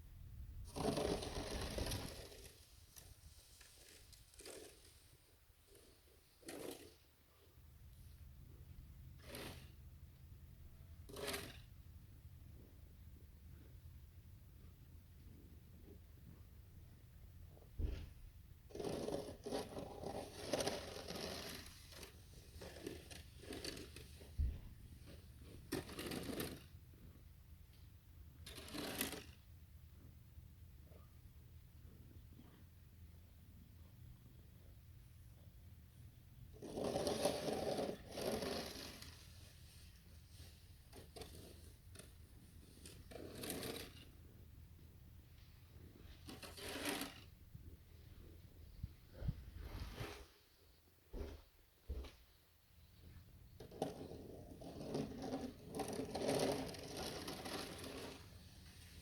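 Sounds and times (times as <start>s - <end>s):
crunching packed snow: 0.7s - 7.0s, 18.8s - 24.3s, 36.6s - 41.7s, 54.0s - 59.0s.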